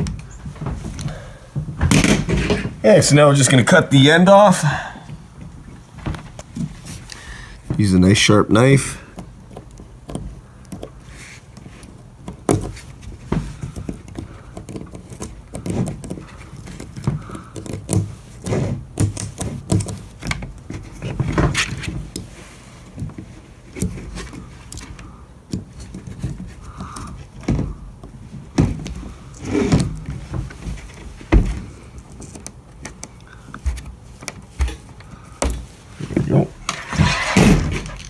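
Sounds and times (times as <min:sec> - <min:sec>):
hands knocking and tapping frame: 0:33.6 - 0:38.0.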